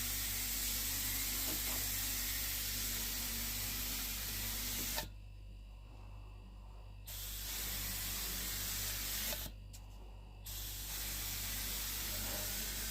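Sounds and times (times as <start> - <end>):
constant low hum: 0.0 - 12.9
spray paint hissing: 7.1 - 9.5, 10.5 - 12.9.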